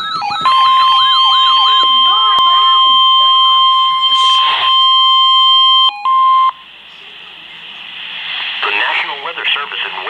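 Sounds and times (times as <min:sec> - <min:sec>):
wavering siren: 0:00.0 - 0:06.6
steady high alarm beep: 0:00.0 - 0:06.7.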